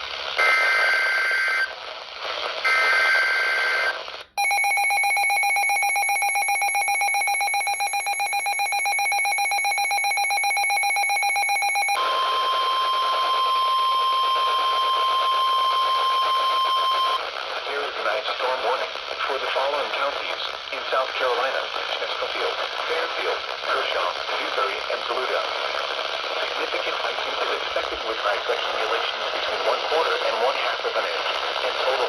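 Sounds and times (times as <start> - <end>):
rapidly pulsing alert alarm: 4.4 - 17.2
steady one-pitch warning tone: 4.4 - 17.2.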